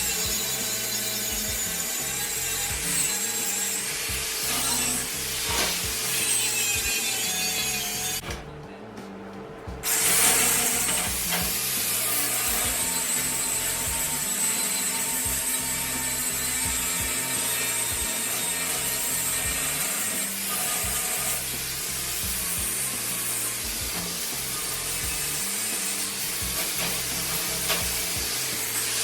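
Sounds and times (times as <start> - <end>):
angle grinder grinding steel: 0.0 - 8.3, 9.8 - 29.0.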